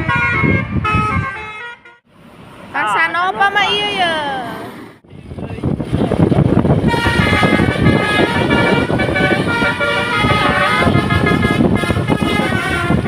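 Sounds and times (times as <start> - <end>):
multi-tone bus horn tune: 0.0 - 2.1, 6.8 - 13.0.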